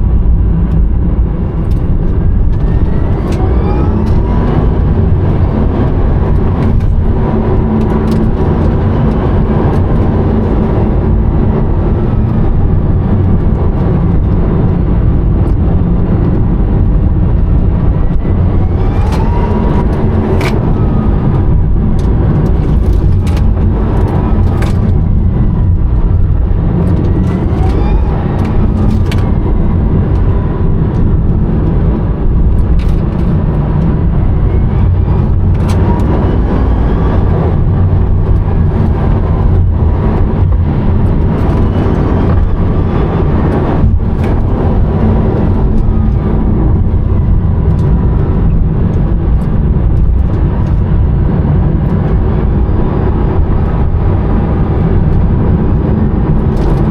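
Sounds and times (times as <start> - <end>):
road and wind rumble: 0.0 - 56.9
electric motor whine: 2.3 - 13.4, 17.1 - 48.4.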